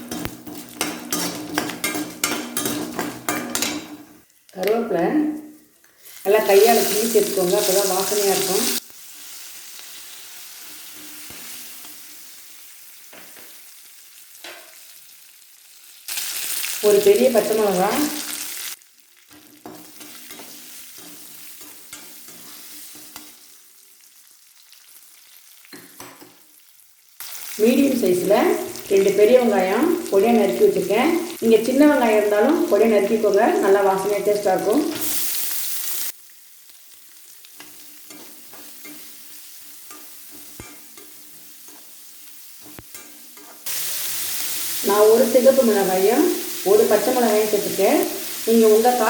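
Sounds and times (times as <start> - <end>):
spoon stirring: 0.0 - 3.9
hot oil sizzling: 0.0 - 49.0.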